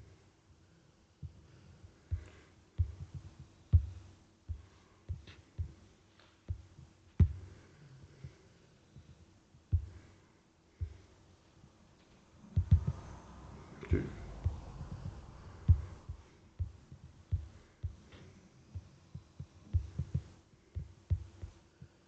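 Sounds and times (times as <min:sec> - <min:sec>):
faint steady hum: 0:00.0 - 0:22.0
low handling thumps and knocks: 0:02.1 - 0:05.9, 0:12.5 - 0:18.2, 0:18.8 - 0:21.6.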